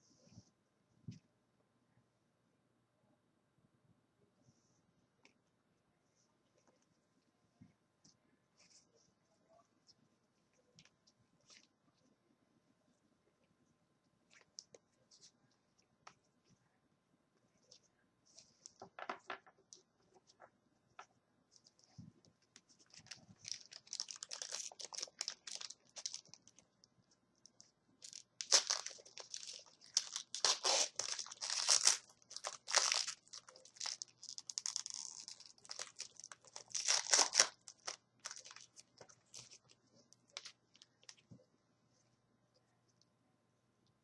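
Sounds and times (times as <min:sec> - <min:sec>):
wrapper tearing and crinkling: 0:23.0 - 0:26.5, 0:28.0 - 0:39.6.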